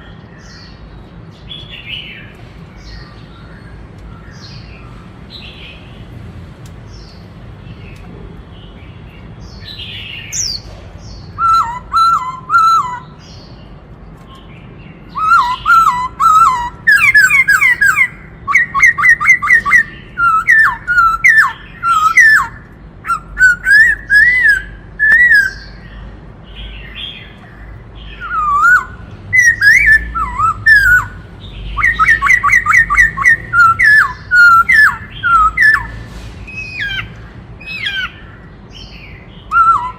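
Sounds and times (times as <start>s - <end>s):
faint bird calls: 9.7s - 13.6s, 15.1s - 39.9s
bird singing whistled phrases: 11.3s - 13.3s, 15.1s - 25.9s, 28.1s - 38.2s, 38.8s - 39.9s.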